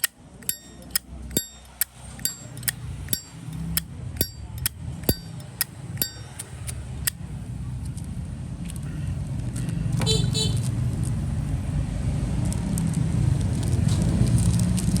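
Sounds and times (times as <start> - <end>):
lighter lid clicking: 0.0 - 6.8.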